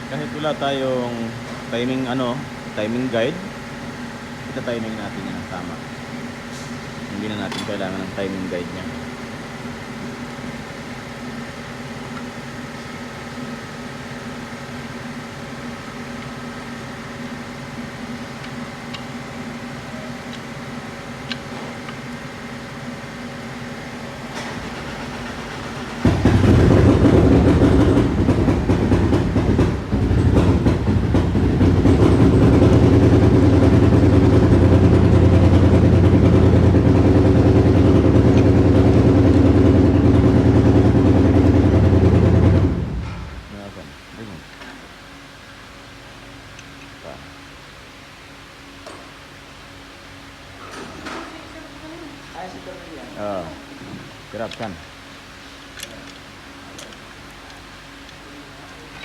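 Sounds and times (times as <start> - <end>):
steady machine hum: 0.0 - 59.0
loud engine rumbling: 23.9 - 43.8.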